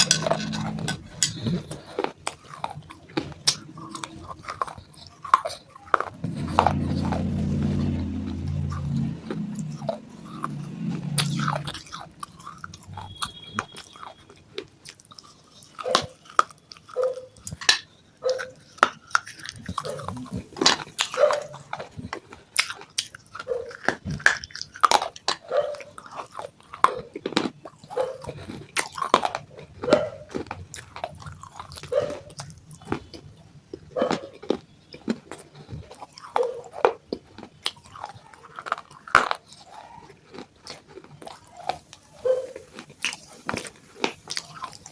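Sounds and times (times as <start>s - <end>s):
low hum: 0.0s - 1.8s, 6.1s - 13.7s.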